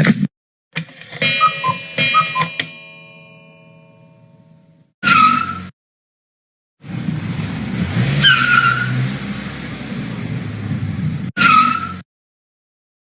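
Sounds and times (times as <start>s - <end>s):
tire screech: 5.0s - 5.7s, 6.8s - 12.0s
cartoon car driving off: 6.8s - 12.0s.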